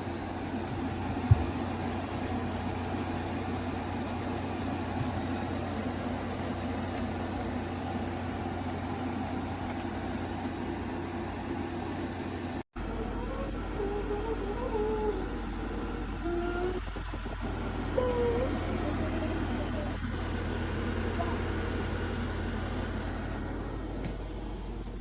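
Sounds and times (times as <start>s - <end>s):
window air conditioner running: 0.0s - 25.0s.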